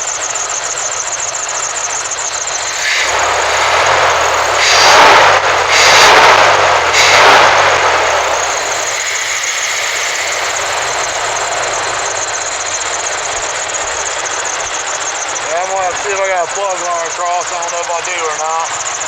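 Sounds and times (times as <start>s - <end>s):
car engine idling and revving: 0.0s - 19.0s
loud hissing surges: 2.4s - 14.9s.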